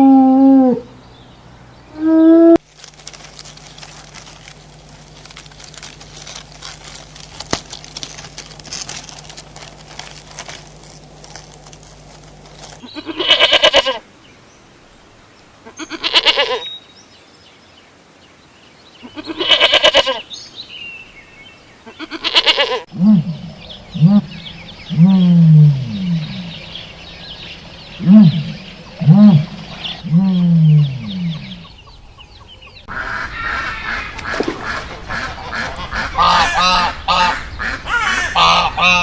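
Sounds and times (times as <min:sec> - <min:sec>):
crackling clicking noise: 0:02.6 - 0:12.9
animal call: 0:21.8 - 0:31.8.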